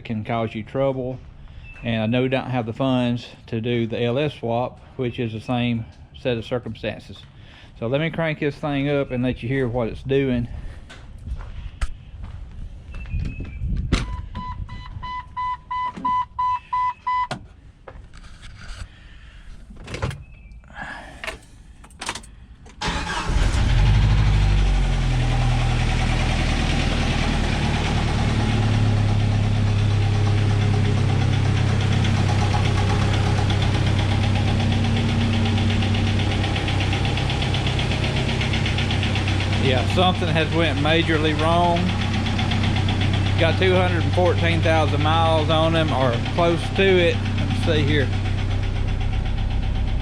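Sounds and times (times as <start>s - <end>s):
car engine cranking and running: 21.2s - 50.0s
engine knock: 24.4s - 50.0s.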